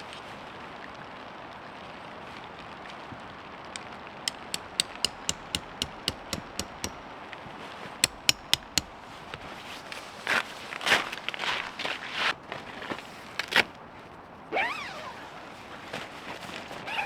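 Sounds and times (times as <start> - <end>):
light rain hissing: 0.0 - 4.8
tent peg being hammered: 3.8 - 7.2, 8.0 - 9.8.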